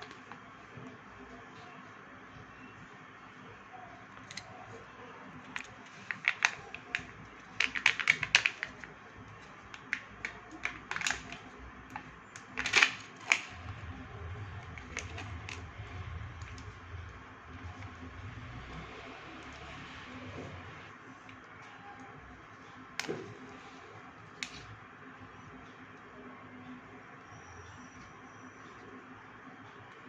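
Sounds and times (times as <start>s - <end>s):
plastic packaging clicks and crackles: 5.4s - 14.0s, 14.6s - 16.8s.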